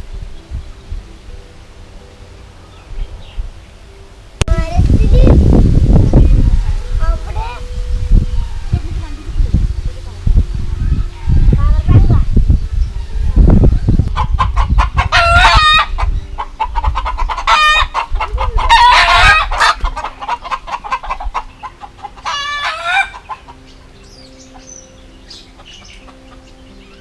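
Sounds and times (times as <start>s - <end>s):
chickens clucking: 12.8s - 27.0s
loud drawn-out chicken calls: 14.2s - 23.6s.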